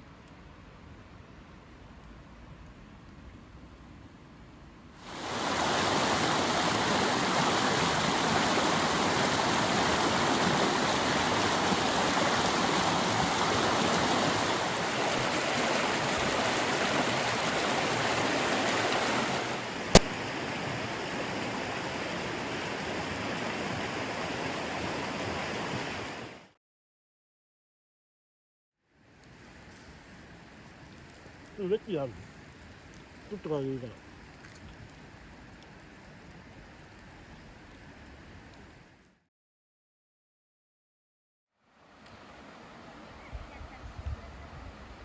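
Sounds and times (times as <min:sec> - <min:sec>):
stream water rushing: 0:05.0 - 0:26.5, 0:41.7 - 0:43.2.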